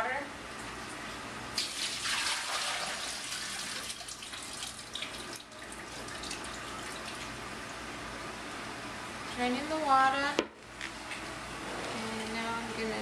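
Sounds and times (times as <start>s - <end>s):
water pouring and splashing: 1.6s - 7.4s.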